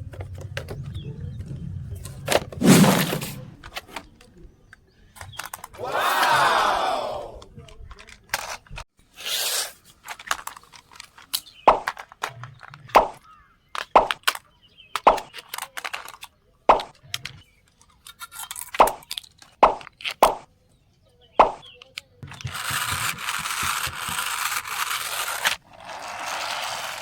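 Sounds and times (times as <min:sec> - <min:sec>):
plastic parts clicking and knocking: 0:03.6 - 0:05.8, 0:07.5 - 0:08.8, 0:10.0 - 0:20.5, 0:21.5 - 0:25.6.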